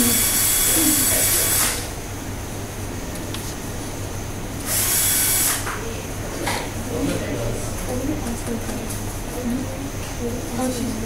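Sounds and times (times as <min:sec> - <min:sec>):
heat gun blowing hot air: 0:00.0 - 0:01.9, 0:04.6 - 0:05.7.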